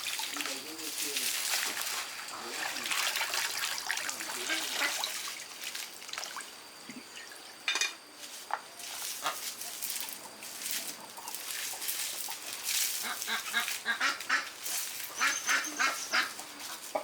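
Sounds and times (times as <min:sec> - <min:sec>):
water trickling and dripping: 0:00.0 - 0:07.7.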